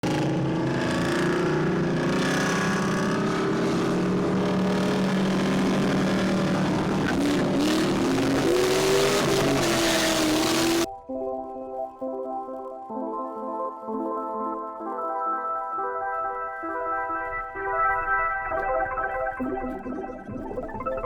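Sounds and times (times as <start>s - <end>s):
car engine revving: 0.0s - 10.9s.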